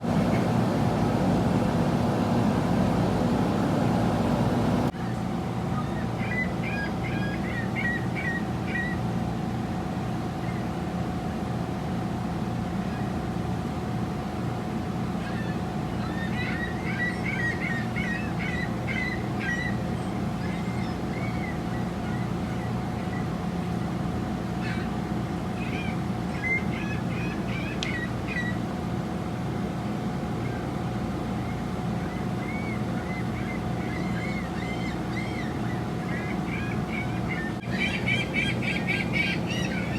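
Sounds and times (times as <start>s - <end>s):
low mechanical hum: 0.0s - 39.9s
bird-like chirping: 5.8s - 9.0s, 15.2s - 23.3s, 25.6s - 28.6s, 31.4s - 39.9s.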